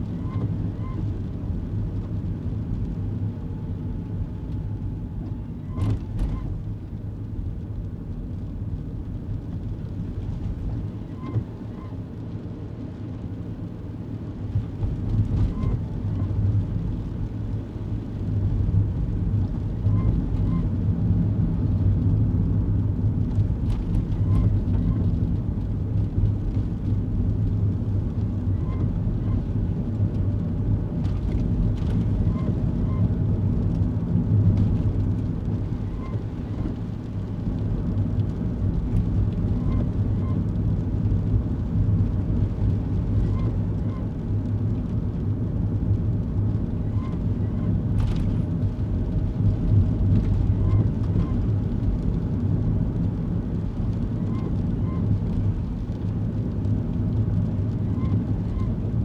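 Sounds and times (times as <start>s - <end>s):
car engine and road rumble: 0.0s - 59.0s.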